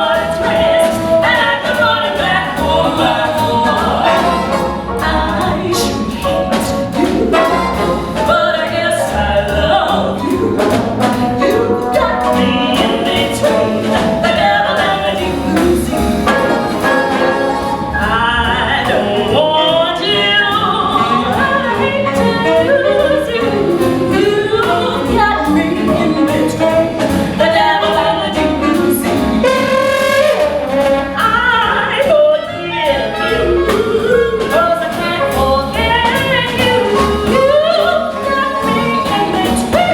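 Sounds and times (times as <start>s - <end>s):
big-band jazz with brass: 0.0s - 39.9s.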